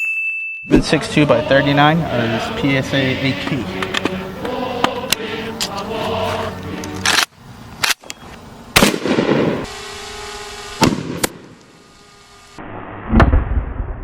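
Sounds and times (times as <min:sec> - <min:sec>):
rifle gunshots: 0:08.8 - 0:09.6, 0:10.8 - 0:11.5.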